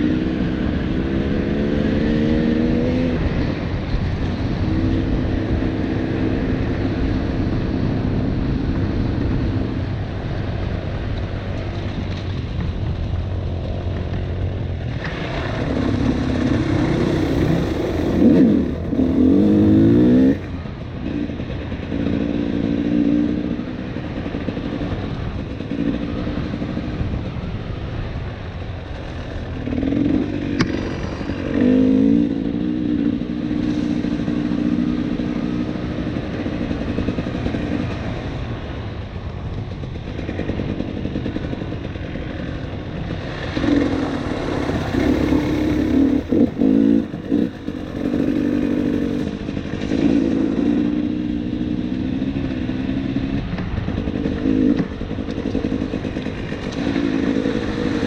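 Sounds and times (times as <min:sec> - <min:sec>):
dirt bike engine revving: 0:00.0 - 0:07.6, 0:15.0 - 0:20.5, 0:40.4 - 0:58.0.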